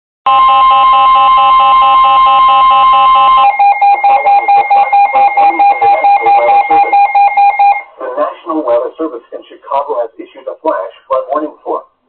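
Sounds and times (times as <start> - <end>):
loud steady electronic tone: 0.3 - 8.0
rapidly pulsing beeps: 1.3 - 7.9.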